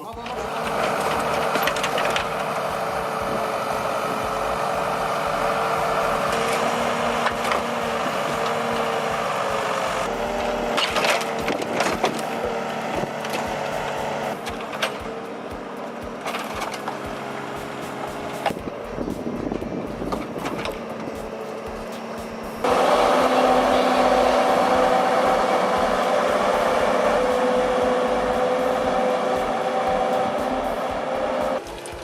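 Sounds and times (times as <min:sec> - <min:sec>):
chainsaw cutting at high revs: 0:00.3 - 0:16.2, 0:22.6 - 0:32.0.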